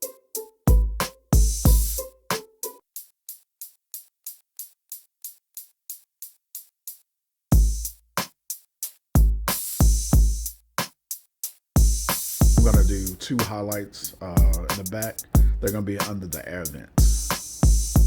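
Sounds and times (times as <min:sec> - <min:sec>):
hi-hat ticks: 0:00.0 - 0:18.0
hip-hop beat with heavy bass kicks: 0:00.7 - 0:02.6, 0:07.5 - 0:08.0, 0:09.2 - 0:10.5, 0:11.8 - 0:18.0.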